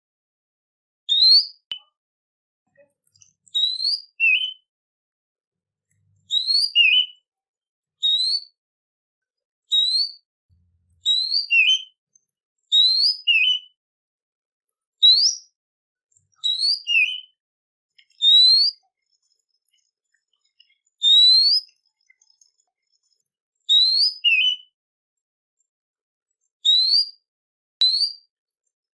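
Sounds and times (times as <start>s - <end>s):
songbird whistling: 1.1s - 1.9s, 3.5s - 4.7s, 6.3s - 7.2s, 8.0s - 8.6s, 9.7s - 10.2s, 11.0s - 12.0s, 12.7s - 13.8s, 15.0s - 15.5s, 16.4s - 17.4s, 18.2s - 18.8s, 21.0s - 21.8s, 23.7s - 24.8s, 26.6s - 27.2s, 27.8s - 28.3s.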